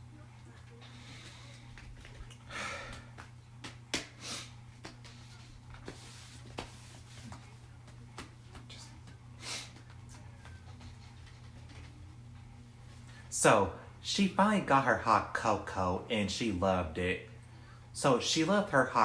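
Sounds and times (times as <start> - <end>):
low electrical hum: 0.0 - 19.0
person sniffing: 4.2 - 4.6.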